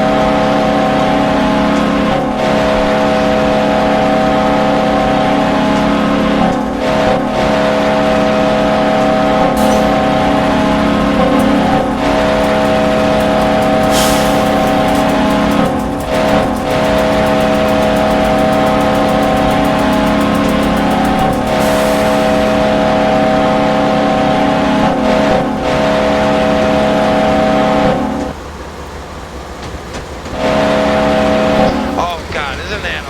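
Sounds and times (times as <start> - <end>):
air horn blasts: 0.0 - 28.3, 30.4 - 33.0.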